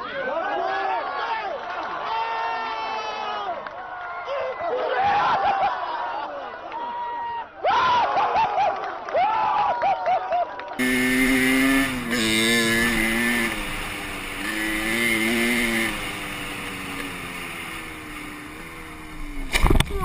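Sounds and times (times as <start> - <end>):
motor engine humming: 10.8 - 20.0.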